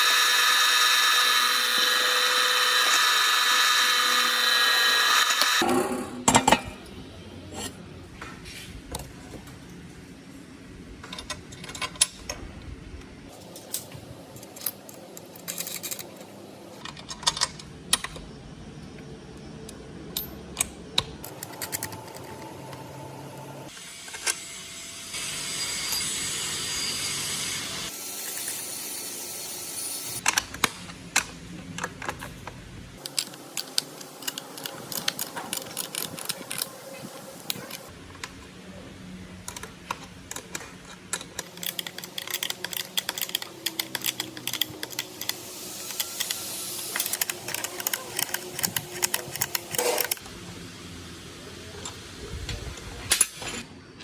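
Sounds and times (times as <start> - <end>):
steady high hiss: 44.8 - 52.3.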